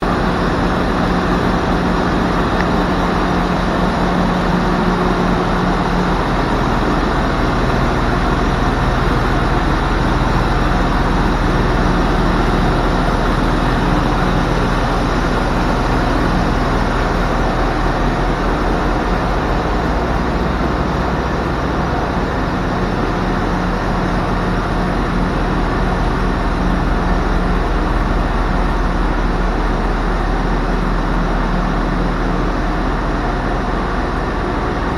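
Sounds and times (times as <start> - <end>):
diesel engine idling: 0.0 - 34.9.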